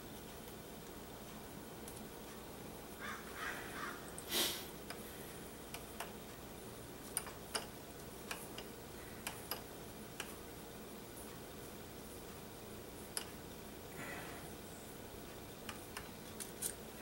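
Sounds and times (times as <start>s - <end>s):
hiss-like burst: 4.3s - 4.7s.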